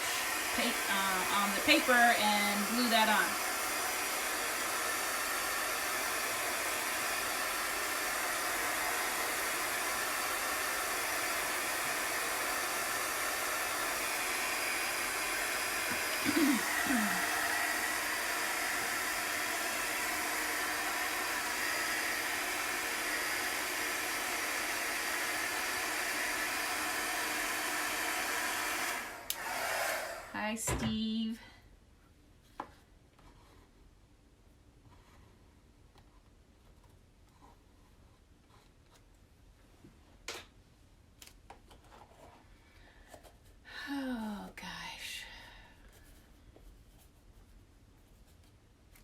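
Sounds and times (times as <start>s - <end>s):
handheld dryer blowing: 0.0s - 30.9s.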